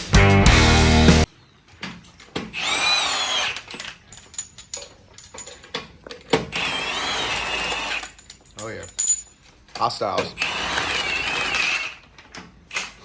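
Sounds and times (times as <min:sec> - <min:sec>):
music: 0:00.0 - 0:01.3
power tool motor whirring: 0:02.5 - 0:04.0, 0:06.4 - 0:08.2, 0:10.4 - 0:12.0.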